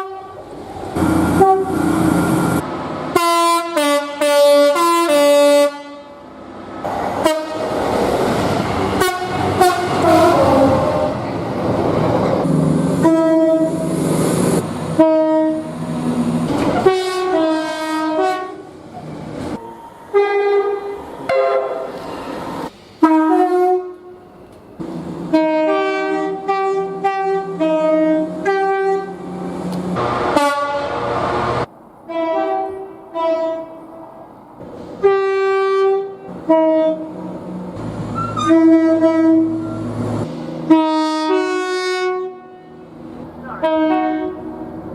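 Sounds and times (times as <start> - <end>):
train horns: 0.0 - 2.4, 3.1 - 6.3, 7.2 - 7.8, 8.8 - 11.2, 13.0 - 14.0, 14.9 - 15.8, 16.8 - 18.8, 19.6 - 22.0, 23.0 - 24.3, 25.3 - 34.0, 35.0 - 37.3, 38.2 - 40.0, 40.6 - 44.7
passing trains rushing: 0.0 - 44.9.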